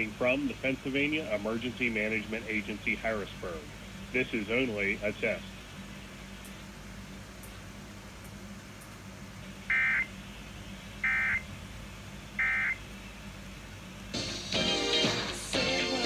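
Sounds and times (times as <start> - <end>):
radio music: 0.0 - 6.4, 14.0 - 16.0.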